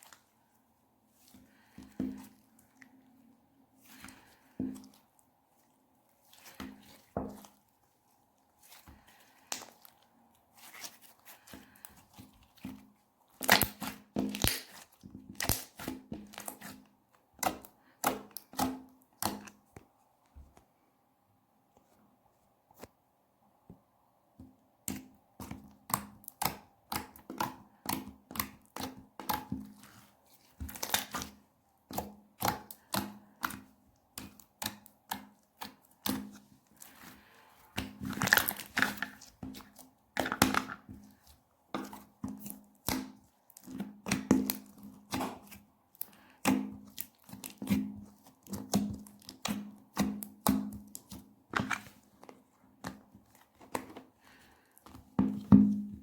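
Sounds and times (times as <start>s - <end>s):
slime squished by hand: 8.6s - 19.6s, 24.8s - 54.0s.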